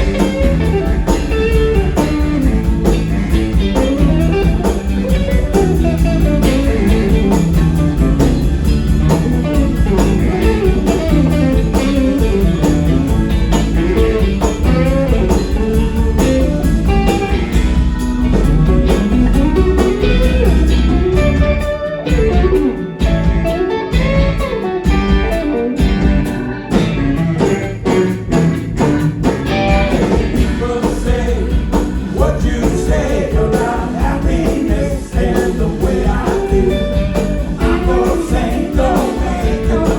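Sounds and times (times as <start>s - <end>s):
bass stabs: 0.0s - 39.9s
blues-rock band playing: 0.0s - 39.9s
drums: 0.0s - 39.9s
electric guitar: 0.0s - 39.9s.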